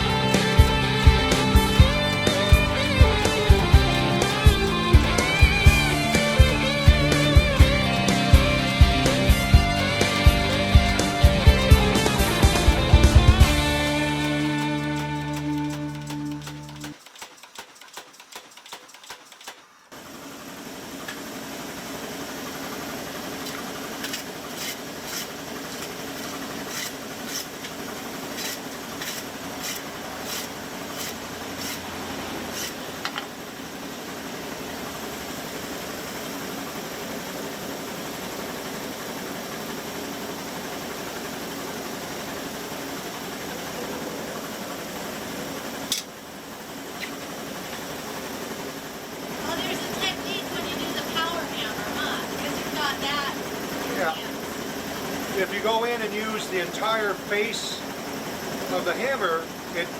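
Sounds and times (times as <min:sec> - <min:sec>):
power hammer drone: 0:00.0 - 0:16.9.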